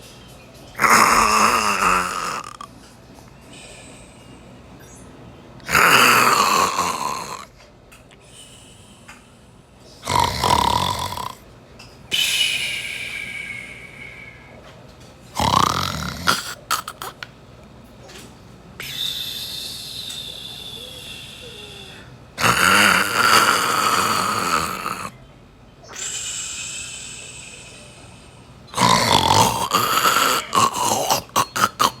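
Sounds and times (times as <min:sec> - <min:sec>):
cat snoring: 0:00.8 - 0:02.6, 0:05.7 - 0:07.5, 0:10.0 - 0:11.4, 0:15.4 - 0:17.0, 0:22.4 - 0:25.1, 0:28.8 - 0:32.0
whistling breath: 0:12.1 - 0:14.7, 0:18.8 - 0:22.1, 0:25.8 - 0:28.5.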